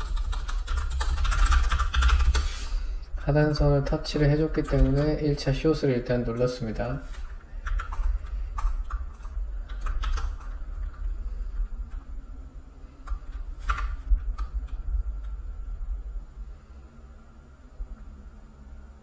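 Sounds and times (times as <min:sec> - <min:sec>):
computer keyboard clicks: 0:00.0 - 0:02.5, 0:07.1 - 0:12.1, 0:13.0 - 0:15.4
low steady hum: 0:00.0 - 0:19.0.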